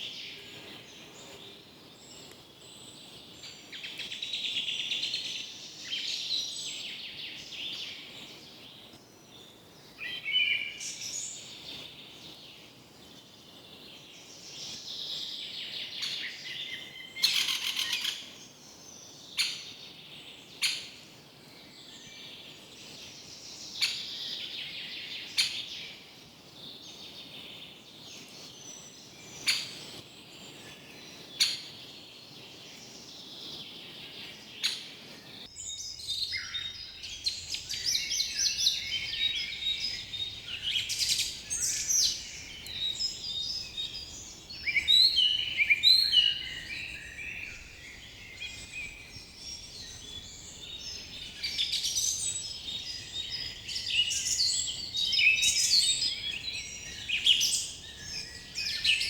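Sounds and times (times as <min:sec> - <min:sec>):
birds singing and chirping: 0:13.8 - 0:20.9, 0:26.7 - 0:59.0.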